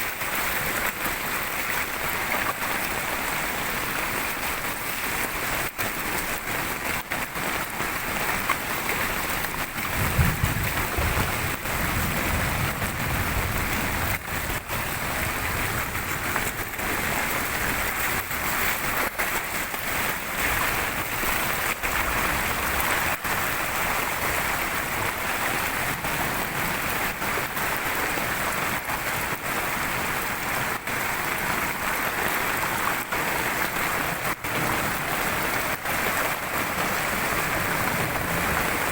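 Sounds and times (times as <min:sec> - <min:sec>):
heavy rain: 0:00.0 - 0:38.9
waterfall rushing: 0:00.0 - 0:38.9.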